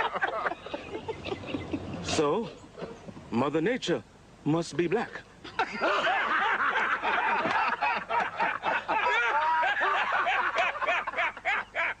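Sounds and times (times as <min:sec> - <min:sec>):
people laughing: 0:00.0 - 0:02.2, 0:05.4 - 0:12.0.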